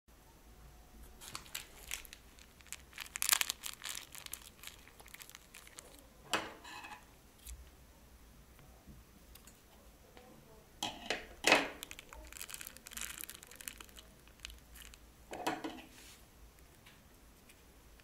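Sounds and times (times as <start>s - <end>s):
plastic bags crinkling: 1.2s - 6.0s, 11.6s - 15.0s.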